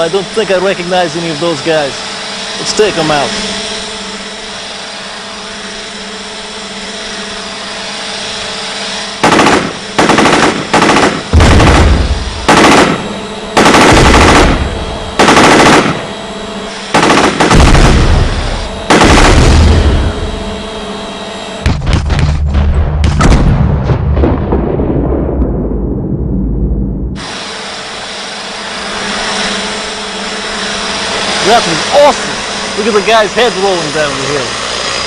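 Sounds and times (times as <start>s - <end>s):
drone rotor hum: 0.0s - 35.0s
automatic gunfire bursts: 9.2s - 16.1s, 16.9s - 18.3s, 18.9s - 20.0s.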